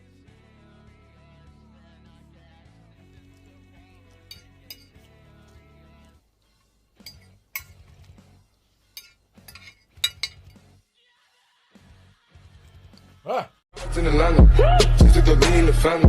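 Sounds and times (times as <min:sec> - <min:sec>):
soft background music: 0:00.0 - 0:16.0
utensils clinking against dishes: 0:04.2 - 0:05.2, 0:07.0 - 0:08.1, 0:08.9 - 0:10.7.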